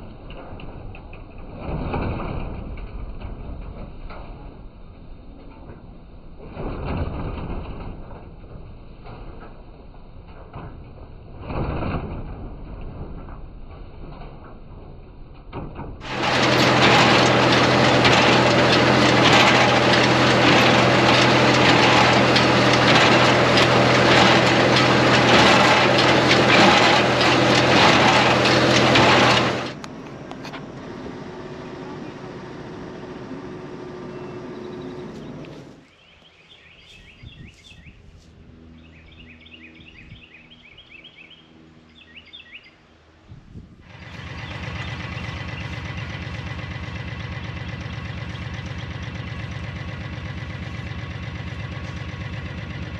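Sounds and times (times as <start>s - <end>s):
baler engine drone with clatter: 0.0s - 37.0s, 43.3s - 52.9s
low steady rumble: 16.0s - 35.9s
birds chirping: 29.3s - 38.1s, 38.7s - 43.0s, 44.0s - 45.9s.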